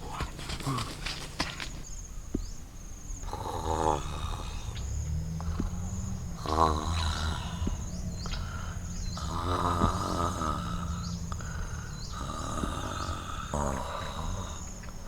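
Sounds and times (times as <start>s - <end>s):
insects trilling and chirping: 0.0s - 15.0s
low rumble: 1.8s - 15.0s.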